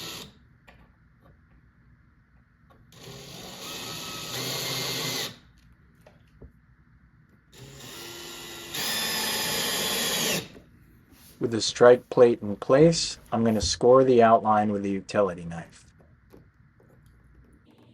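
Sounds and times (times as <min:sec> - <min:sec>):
power drill driving screws: 0:00.0 - 0:00.3, 0:03.0 - 0:05.4, 0:07.6 - 0:10.6.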